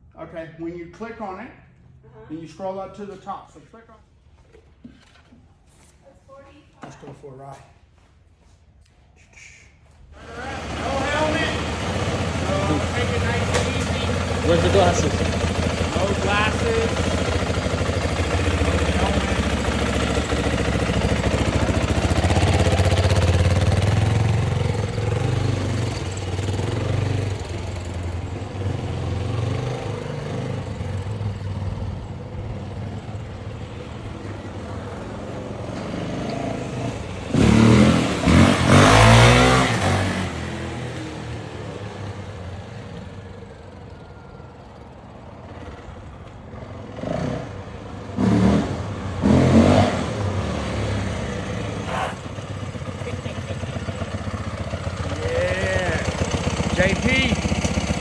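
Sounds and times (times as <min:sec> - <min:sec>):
dirt bike engine revving: 0:10.2 - 0:43.0, 0:46.5 - 0:58.0.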